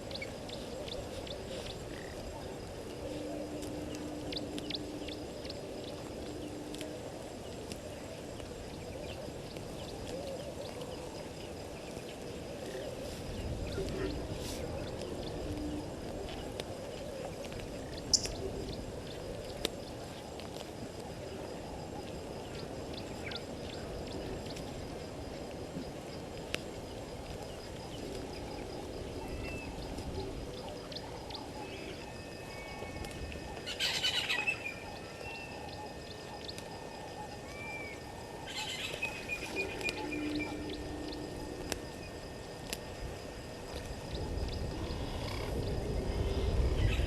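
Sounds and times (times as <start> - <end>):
birds chirping: 0.0 - 20.4, 27.2 - 47.0
low background hiss: 0.0 - 47.0
birds whistling: 37.4 - 42.2
faint high tone: 39.0 - 42.2.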